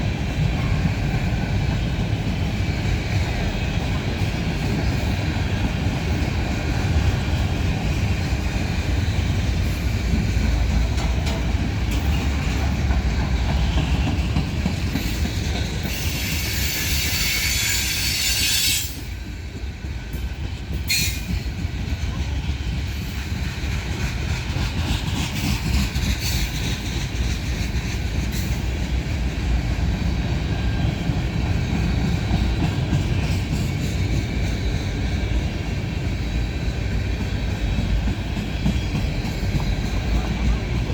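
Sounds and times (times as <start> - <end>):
train wheels rumbling on rails: 0.0 - 40.9
wheels clicking over rail joints: 0.1 - 35.8, 36.6 - 40.9
high wheel squeal: 15.9 - 19.0.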